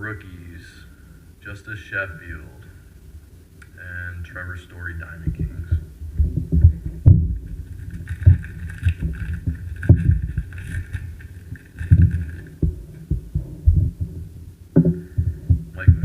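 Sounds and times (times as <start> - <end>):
high rustle: 5.3 - 14.4
trading cards being handled: 6.8 - 13.2.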